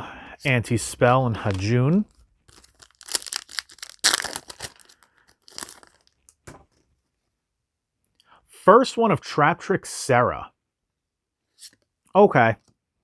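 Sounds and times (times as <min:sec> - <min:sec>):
foil wrapper crinkling and tearing: 0:01.4 - 0:01.7, 0:02.5 - 0:06.2.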